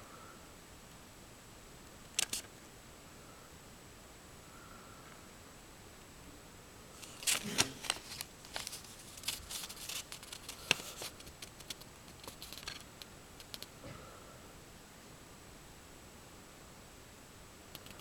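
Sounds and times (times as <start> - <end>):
packaging clicking and crinkling: 7.0 - 13.7.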